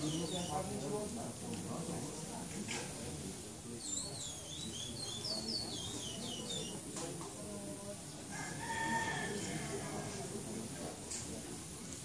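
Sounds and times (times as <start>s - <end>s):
bird singing whistled notes: 0.0s - 0.7s, 3.8s - 6.8s.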